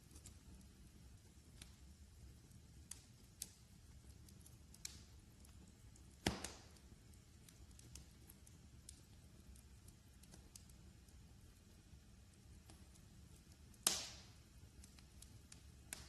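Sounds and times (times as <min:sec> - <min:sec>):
fire popping: 0:00.0 - 0:16.0
wood fire crackling: 0:00.0 - 0:16.0
loud crack: 0:06.2 - 0:06.7.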